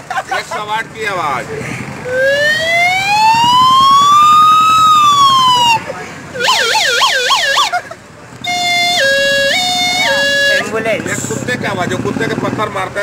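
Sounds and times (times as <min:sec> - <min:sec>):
siren noisemaker wailing and yelping: 0:02.1 - 0:07.8, 0:08.5 - 0:10.7.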